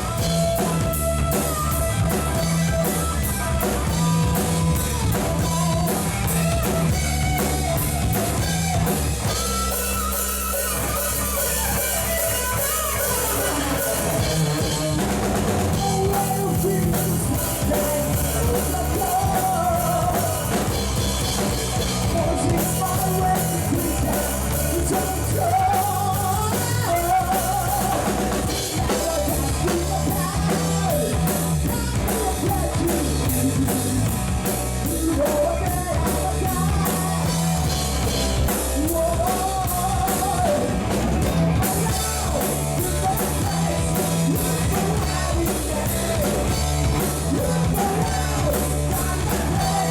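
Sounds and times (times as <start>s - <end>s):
rock music with vocals: 0.0s - 49.9s.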